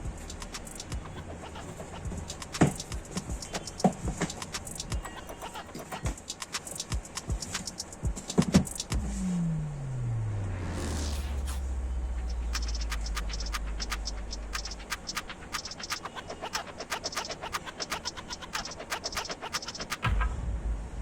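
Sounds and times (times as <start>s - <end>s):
sharp clicks and scratches: 0.0s - 9.0s, 10.7s - 20.2s
low steady hum: 8.9s - 15.4s.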